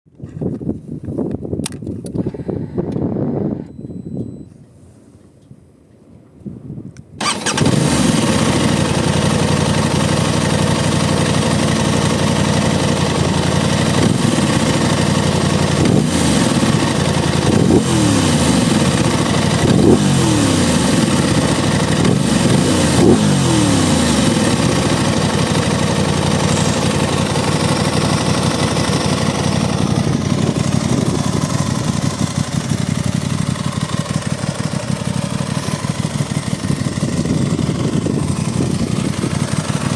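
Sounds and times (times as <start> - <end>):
wind noise on microphone: 0.1 - 7.8, 29.7 - 33.5, 36.0 - 39.9
motorcycle engine revving: 7.2 - 39.9.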